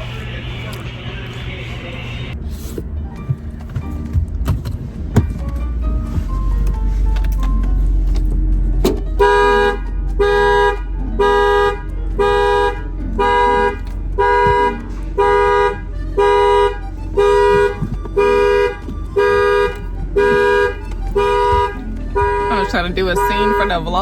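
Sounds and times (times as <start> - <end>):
bump against car: 2.7 - 24.0
car horn blasts: 8.8 - 24.0.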